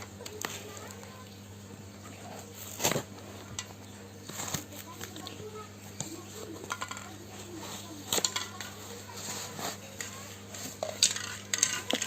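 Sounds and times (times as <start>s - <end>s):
faint steady hum: 0.0s - 12.0s
hard objects clicking and clinking: 6.4s - 8.9s, 10.0s - 12.0s.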